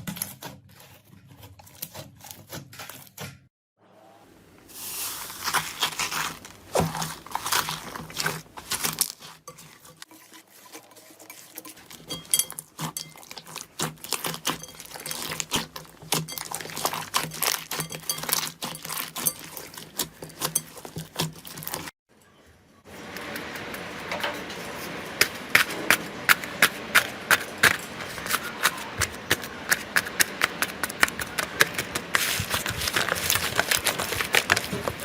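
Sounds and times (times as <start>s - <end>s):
slime crackling and popping: 16.3s - 19.8s.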